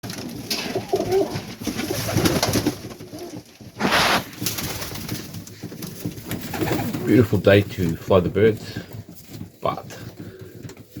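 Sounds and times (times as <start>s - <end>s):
pigeons cooing: 0.5s - 4.8s
short rustling burst: 3.8s - 4.8s.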